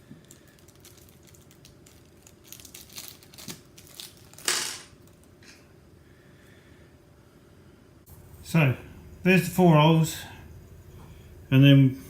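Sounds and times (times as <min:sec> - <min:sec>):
plastic bag crinkling: 0:00.0 - 0:05.4.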